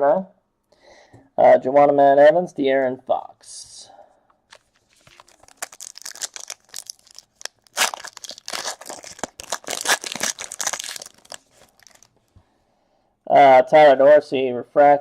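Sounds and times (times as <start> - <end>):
plastic wrapper crinkling and tearing: 4.5 - 12.2.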